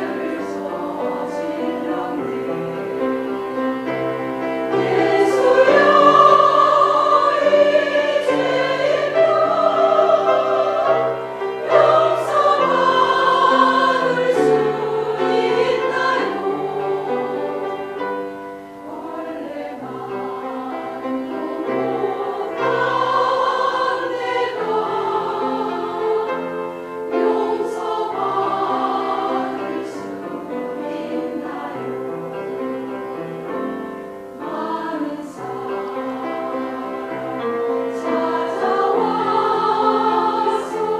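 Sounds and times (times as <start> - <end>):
choir singing a hymn: 0.0 - 40.9.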